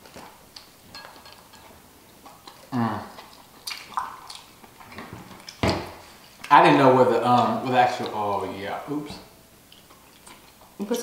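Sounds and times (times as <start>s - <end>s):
person murmuring: 2.7s - 3.2s.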